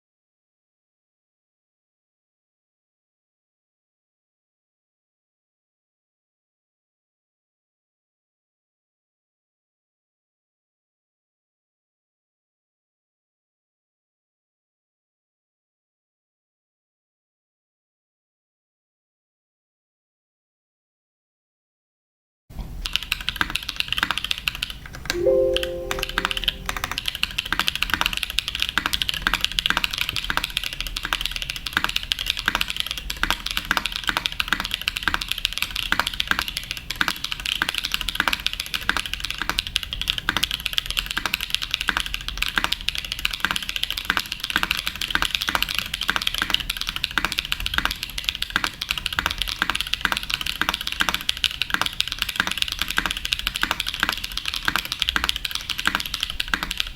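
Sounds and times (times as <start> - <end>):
mechanical keyboard typing: 22.9 - 26.9, 28.7 - 56.9
low ringing tone: 25.2 - 27.0.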